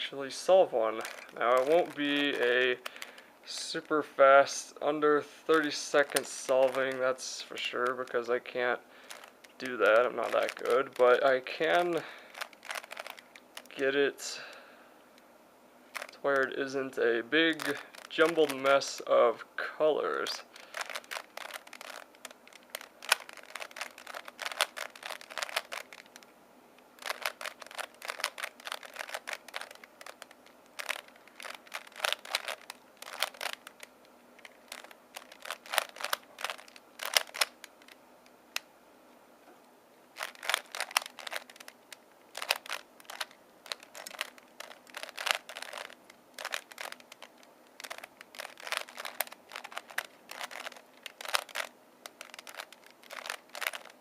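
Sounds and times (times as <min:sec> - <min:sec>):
puzzle cube clicking and rattling: 0:00.9 - 0:03.2, 0:05.5 - 0:08.3, 0:09.0 - 0:13.8, 0:15.9 - 0:16.5, 0:17.5 - 0:19.0, 0:20.2 - 0:26.3, 0:27.0 - 0:38.0, 0:40.2 - 0:54.0.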